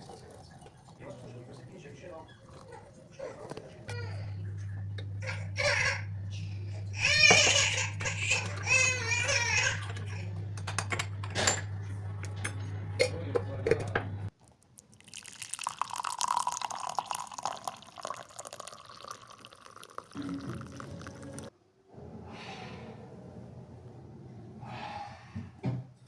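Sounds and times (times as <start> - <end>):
tea pouring into a cup: 0.0 - 5.2, 14.3 - 21.5.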